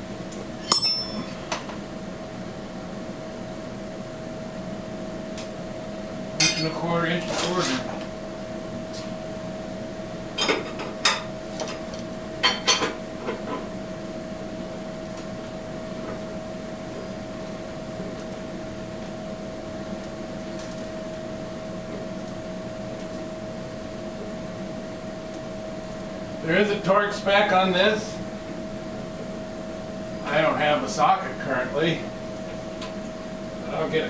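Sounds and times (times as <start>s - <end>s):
steady shop hum: 0.0s - 34.0s
metal hand tools clinking: 0.6s - 1.4s.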